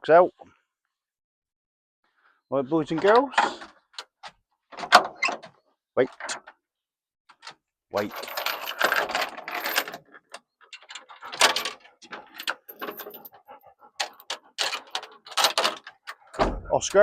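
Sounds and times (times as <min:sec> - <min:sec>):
dogs panting: 0:11.0 - 0:16.4.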